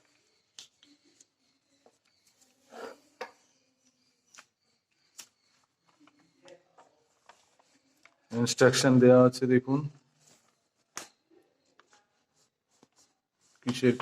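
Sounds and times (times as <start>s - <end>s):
soft paper clicks: 4.2s - 8.2s
paper pages rustling: 4.3s - 8.3s, 10.2s - 14.0s.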